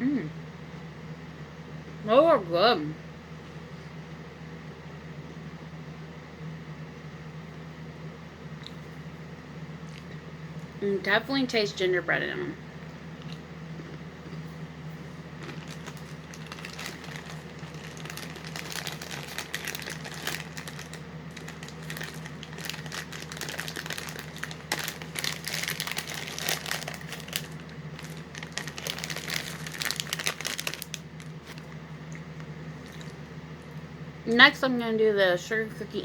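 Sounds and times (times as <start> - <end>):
low steady hum: 0.0 - 36.0
plastic packaging crinkling: 15.4 - 31.8.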